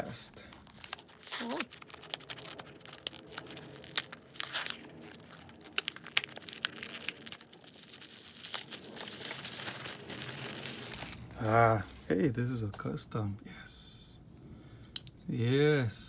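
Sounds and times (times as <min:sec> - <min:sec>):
wrapping crinkling and tearing: 0:00.1 - 0:12.7.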